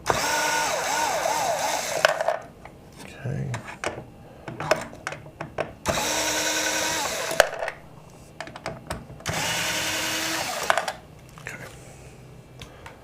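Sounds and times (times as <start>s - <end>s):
electric screwdriver motor whine: 0.0s - 2.3s, 5.9s - 7.5s, 9.3s - 11.0s.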